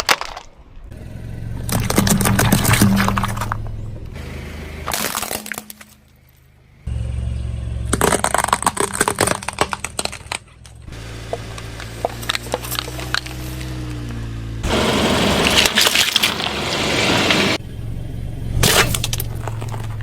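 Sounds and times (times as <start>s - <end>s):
tyre crushing cracking toys: 0.0s - 0.9s, 4.8s - 6.3s, 7.9s - 13.8s, 14.7s - 17.6s, 18.6s - 20.0s
car engine humming: 0.7s - 20.0s.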